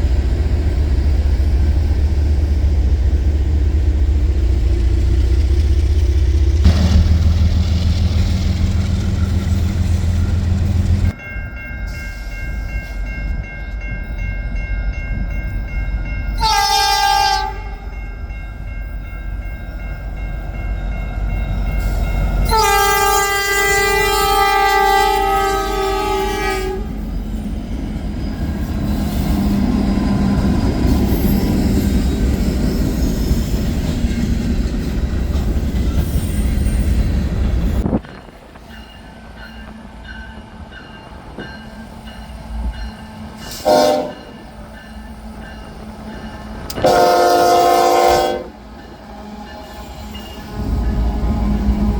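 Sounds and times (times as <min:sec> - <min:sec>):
train rolling by: 0:00.0 - 0:51.9
locomotive air horn: 0:16.4 - 0:17.9, 0:22.4 - 0:27.0, 0:43.4 - 0:44.3, 0:46.7 - 0:48.6.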